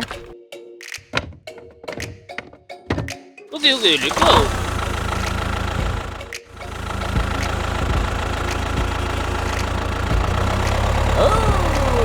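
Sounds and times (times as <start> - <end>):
vehicle engine idling: 3.6 - 12.0.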